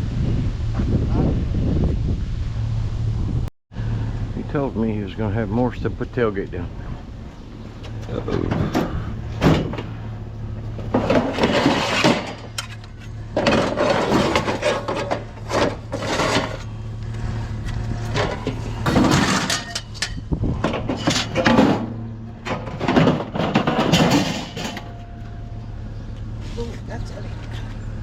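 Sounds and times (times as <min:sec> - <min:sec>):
steady low hum: 0:00.0 - 0:28.0
scrap metal clanking: 0:07.9 - 0:25.5.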